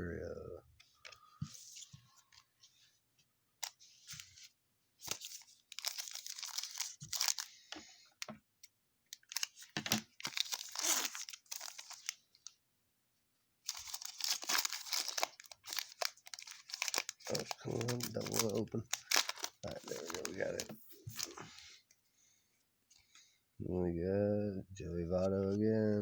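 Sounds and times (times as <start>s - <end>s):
foil wrapper tearing and crinkling: 5.1s - 7.5s, 9.2s - 12.2s, 13.7s - 21.4s.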